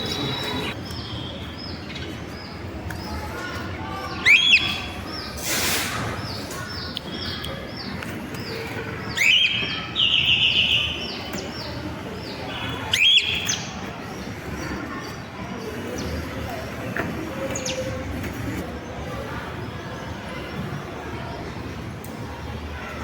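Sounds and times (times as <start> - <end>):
bird chirping: 0.0 - 3.1.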